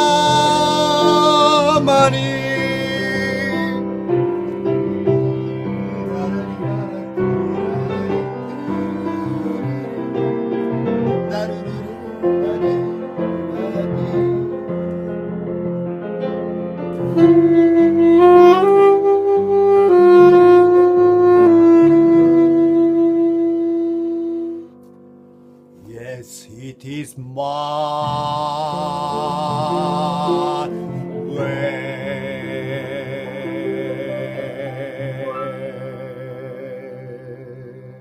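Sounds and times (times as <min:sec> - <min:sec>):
tenor saxophone melody: 0:00.0 - 0:14.7, 0:16.9 - 0:24.9
musical accompaniment: 0:00.0 - 0:38.0.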